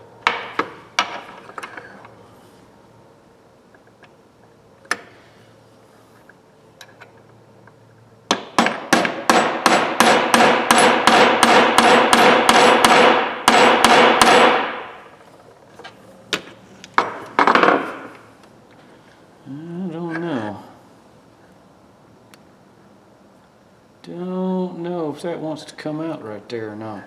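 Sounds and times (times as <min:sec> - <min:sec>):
hammer tapping metal punch: 0:08.3 - 0:14.7.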